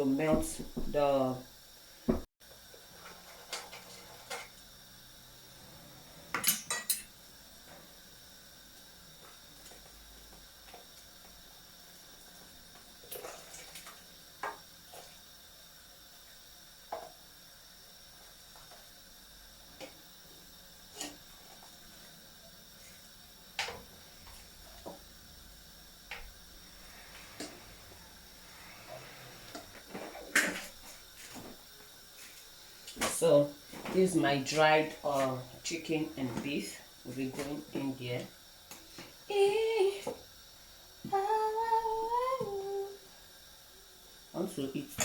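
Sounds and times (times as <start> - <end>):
utensils clinking against pots: 6.4 - 7.1.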